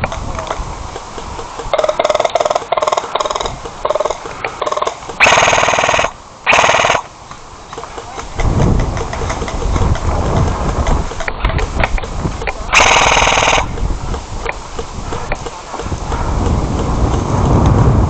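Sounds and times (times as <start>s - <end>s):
sharp clicks: 0.0s - 17.7s
airsoft gun rapid burst: 1.8s - 7.1s, 12.7s - 13.7s.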